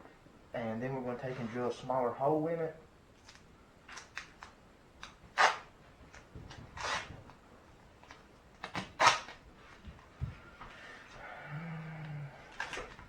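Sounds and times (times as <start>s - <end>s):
tape pulled off and torn: 3.2s - 7.2s, 8.0s - 9.4s.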